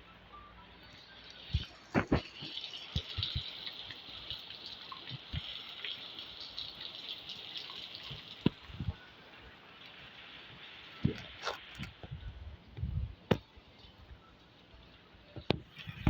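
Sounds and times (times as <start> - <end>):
rain hiss: 1.1 - 12.0.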